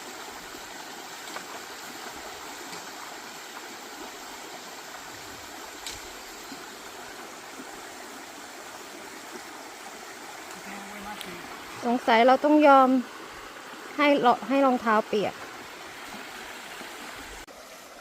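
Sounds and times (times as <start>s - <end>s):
stream water flowing: 0.0s - 18.0s.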